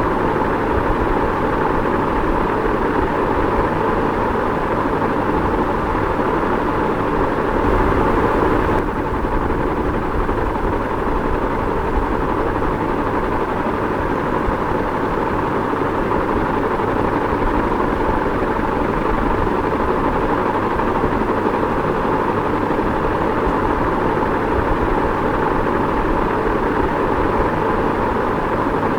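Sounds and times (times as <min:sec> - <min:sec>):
ceiling fan whirring: 0:00.0 - 0:28.9.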